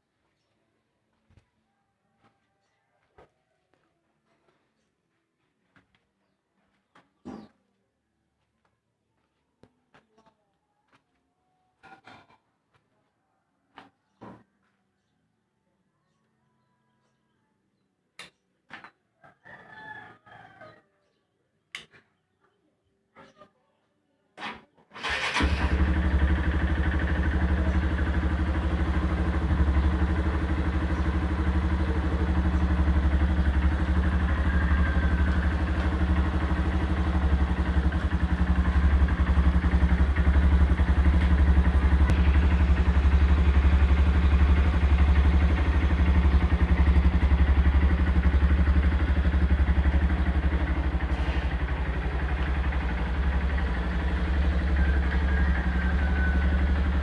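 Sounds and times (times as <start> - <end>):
motorcycle engine starting and idling: 24.4 - 57.0.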